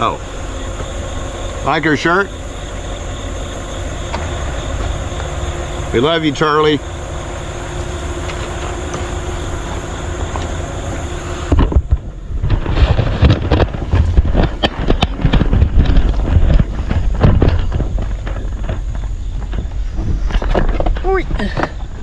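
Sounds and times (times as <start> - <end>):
truck engine hum: 0.0 - 22.0
truck thumps and knocks: 3.9 - 7.5, 8.2 - 22.0.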